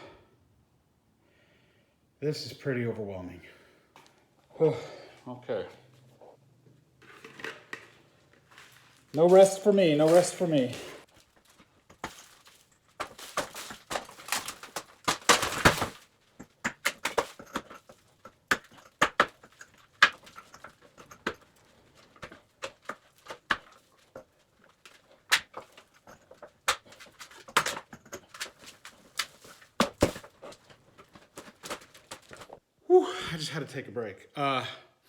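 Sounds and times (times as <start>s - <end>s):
wall material scraping and crumbling: 7.0s - 32.6s
debris knocking and clattering: 7.1s - 32.6s.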